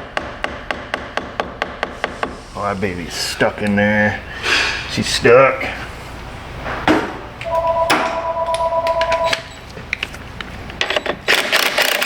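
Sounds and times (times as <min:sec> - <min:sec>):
power ratchet whirring: 0:11.3 - 0:12.0.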